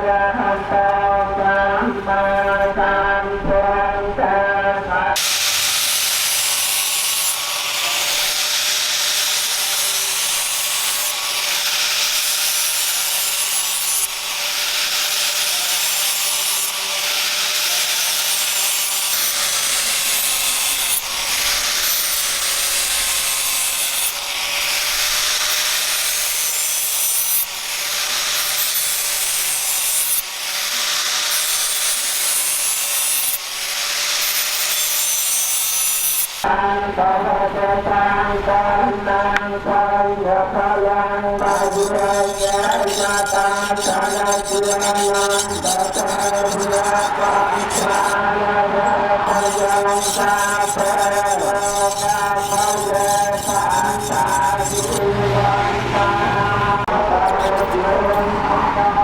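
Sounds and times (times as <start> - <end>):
abrasive rubbing on steel blade: 41.4 - 48.2, 48.8 - 55.2, 57.2 - 58.0.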